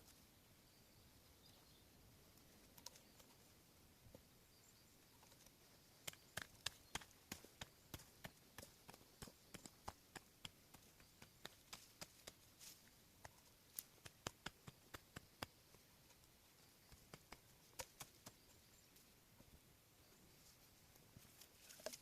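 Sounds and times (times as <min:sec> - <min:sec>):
faint sharp clicks and pops: 0:05.2 - 0:18.5.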